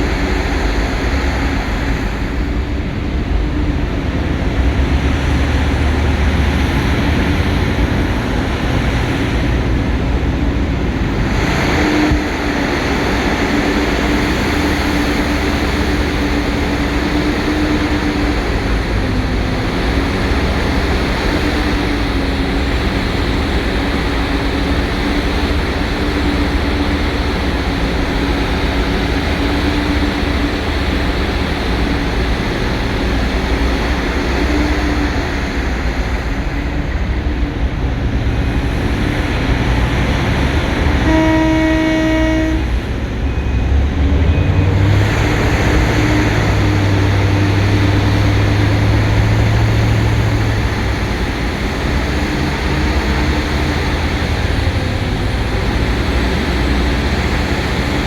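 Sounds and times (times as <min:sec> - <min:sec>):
heavy mining machine rumbling: 0:00.0 - 0:58.0
horn sounding: 0:40.8 - 0:46.7.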